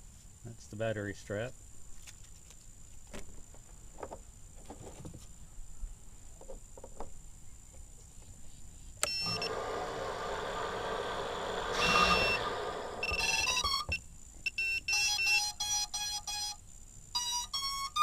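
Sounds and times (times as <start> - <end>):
steady buzzing hiss: 0.0 - 18.0
short electronic beeps: 11.8 - 15.8.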